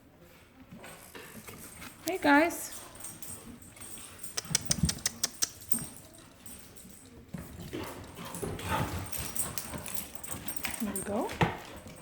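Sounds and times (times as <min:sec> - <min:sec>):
puppies scuffling: 0:00.1 - 0:12.0
puppies scrabbling: 0:00.7 - 0:12.0
sharp clicks and taps of paws: 0:03.0 - 0:12.0.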